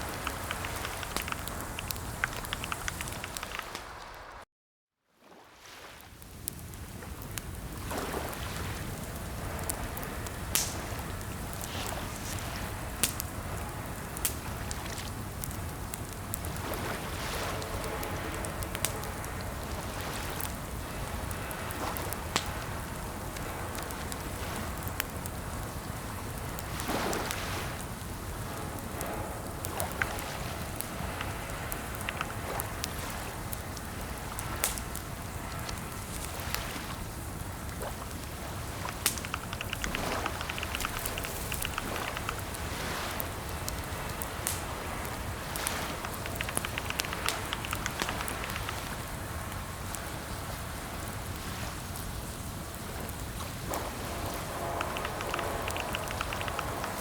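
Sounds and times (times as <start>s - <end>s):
steady rain-like hiss: 0.0s - 4.4s, 5.3s - 57.0s
computer keyboard typing: 0.1s - 3.8s, 31.0s - 32.6s, 38.9s - 42.4s, 45.9s - 48.9s, 54.4s - 57.0s.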